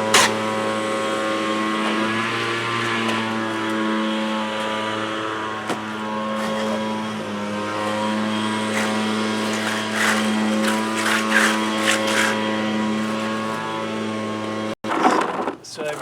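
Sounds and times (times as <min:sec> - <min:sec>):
brush scrubbing concrete: 0:00.0 - 0:14.1
engine drone: 0:00.0 - 0:14.8.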